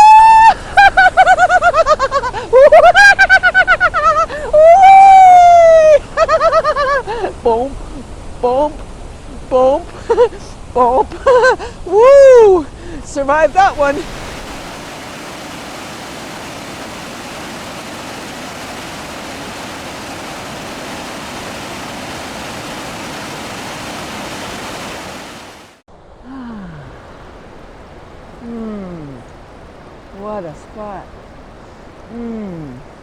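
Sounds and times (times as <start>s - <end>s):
water rushing over rocks: 13.5s - 25.8s, 26.8s - 33.0s.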